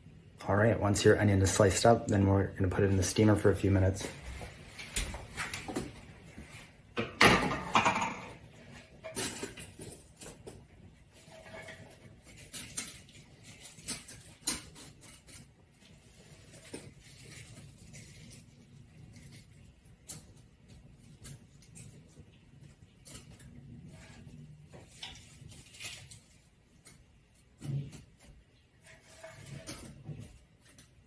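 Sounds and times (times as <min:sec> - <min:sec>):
metal pot clinking and clattering: 0:07.2 - 0:09.8.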